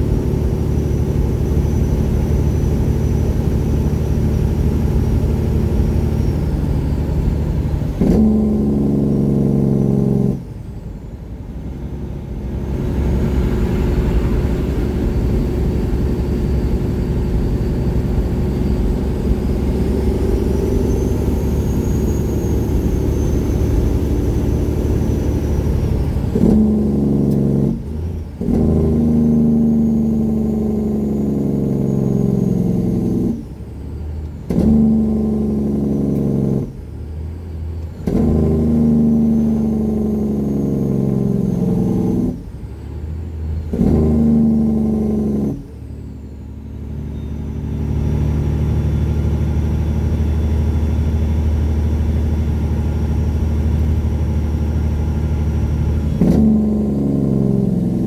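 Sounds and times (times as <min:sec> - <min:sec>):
diesel truck engine under load: 0:00.0 - 0:58.0
high turbo whistle: 0:12.7 - 0:26.8, 0:43.6 - 0:54.0.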